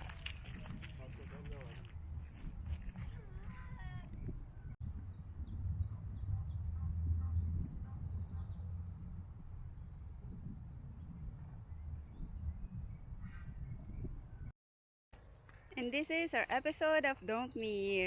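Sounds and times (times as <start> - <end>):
small songbirds chirping: 0.0 - 14.5, 15.2 - 18.0.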